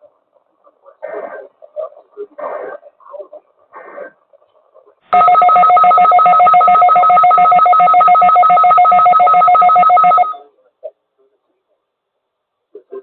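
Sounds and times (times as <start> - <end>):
two-pitch pulsing alarm tone: 5.2 - 10.4.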